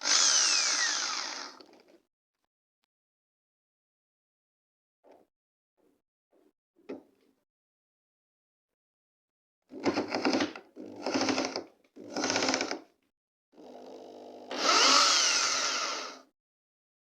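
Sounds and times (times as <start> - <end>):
electric drill running: 0.0 - 1.6, 12.2 - 12.8, 13.7 - 16.2.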